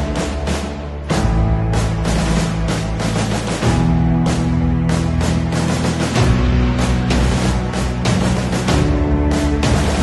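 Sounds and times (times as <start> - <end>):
dramatic music with low notes: 0.0 - 10.0.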